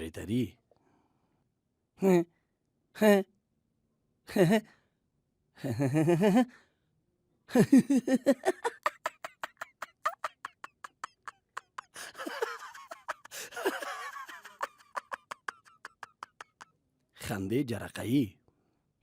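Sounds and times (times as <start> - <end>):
person laughing like an engine: 7.6 - 16.6.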